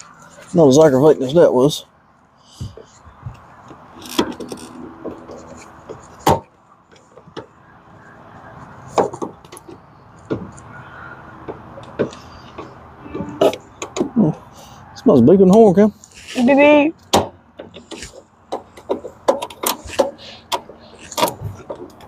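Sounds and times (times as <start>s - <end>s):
sharp knocks and clunks: 2.5s - 7.6s, 8.8s - 10.6s, 11.4s - 14.4s, 17.1s - 22.0s.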